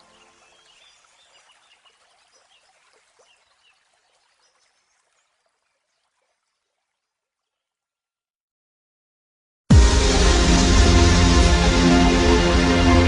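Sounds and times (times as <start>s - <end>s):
faint trickling water: 0.0s - 8.1s.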